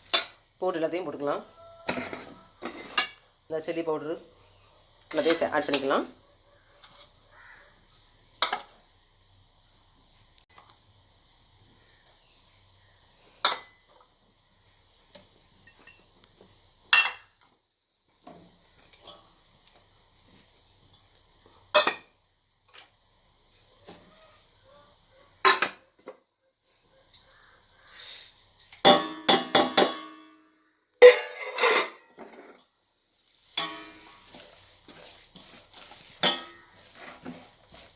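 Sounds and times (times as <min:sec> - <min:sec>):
metal utensils clinking: 0:05.1 - 0:06.1, 0:31.0 - 0:32.4, 0:33.4 - 0:37.4.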